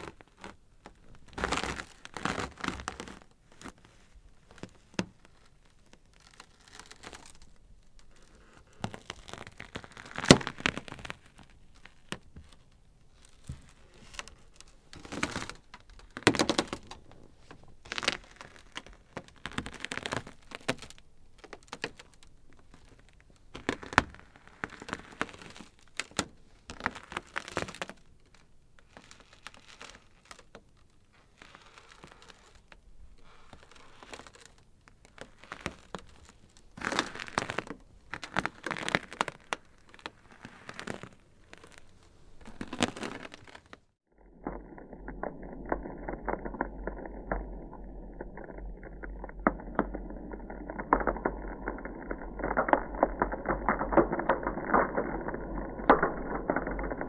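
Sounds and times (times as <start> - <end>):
ice cracking and snapping: 6.1 - 12.3, 33.4 - 57.0.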